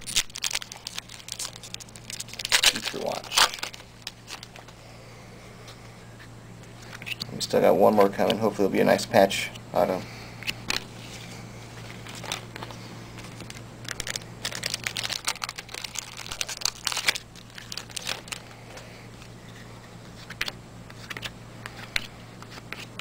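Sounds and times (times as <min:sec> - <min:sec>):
wrappers crinkling and tearing: 0:00.0 - 0:04.7, 0:11.8 - 0:18.8
low electrical hum: 0:00.0 - 0:23.0.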